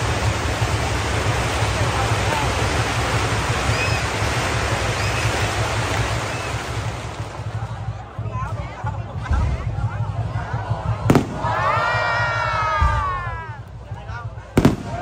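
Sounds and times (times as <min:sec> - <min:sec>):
fireworks crackling: 0:00.0 - 0:15.0.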